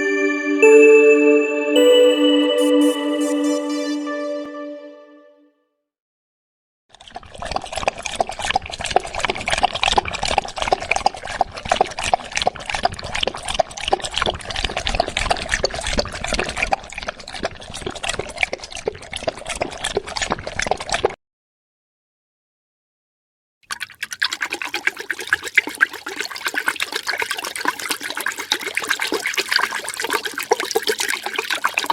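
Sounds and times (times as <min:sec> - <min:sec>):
dog lapping water: 0:06.9 - 0:21.2, 0:23.7 - 0:31.9.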